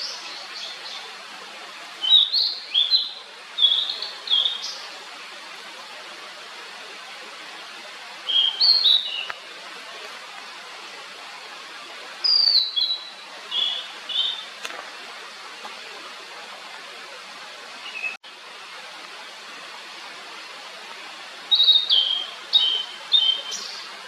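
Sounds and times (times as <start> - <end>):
background hiss: 0.0 - 24.0
bird whistling song: 8.3 - 9.3, 12.2 - 14.4, 21.5 - 23.8.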